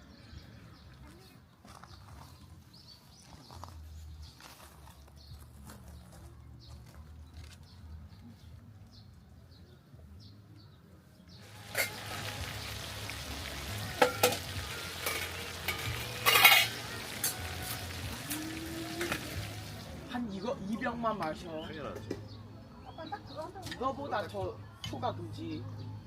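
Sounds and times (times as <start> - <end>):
food sizzling in a hot pan: 11.4 - 20.0
utensil clinking and scraping pan: 11.5 - 12.4, 13.9 - 17.4.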